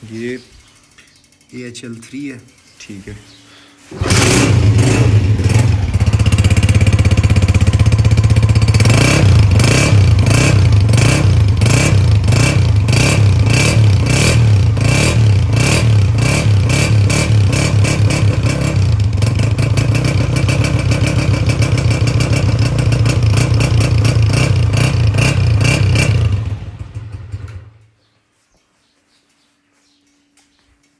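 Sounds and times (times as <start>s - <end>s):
motorcycle engine exhaust pulsing: 3.9s - 27.8s.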